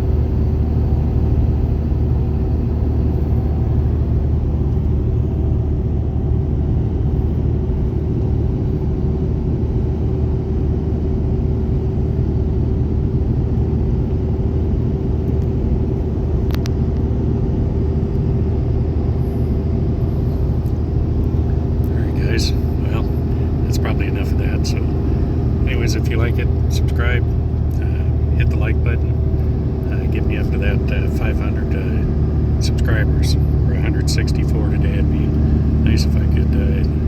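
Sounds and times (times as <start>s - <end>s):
car engine and tyre rumble: 0.0s - 37.0s.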